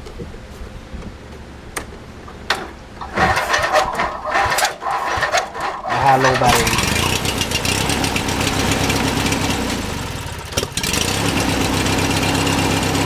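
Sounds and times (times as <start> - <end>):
starter cranking engine: 1.8 - 11.8.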